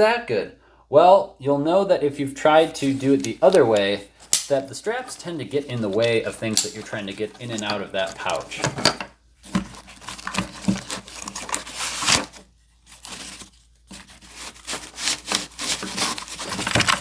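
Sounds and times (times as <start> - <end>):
nylon straps rustling: 2.6 - 8.8, 9.4 - 17.0
plastic clips clicking: 2.8 - 4.8, 5.8 - 8.7.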